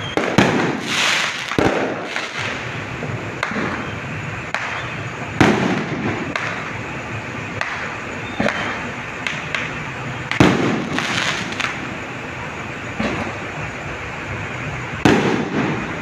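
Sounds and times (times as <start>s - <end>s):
firework cracks and pops: 0.0s - 12.0s, 12.9s - 13.6s, 15.0s - 16.0s
loud firework bangs: 0.0s - 12.1s, 12.8s - 13.7s, 14.8s - 16.0s
distant crackling: 0.0s - 16.0s.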